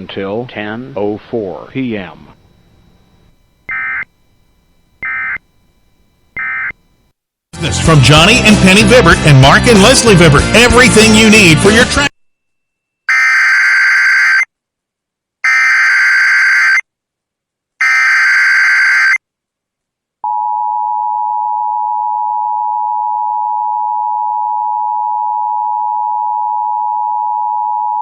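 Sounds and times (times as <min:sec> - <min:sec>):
buzzy data burst warble: 0:15.4 - 0:16.8.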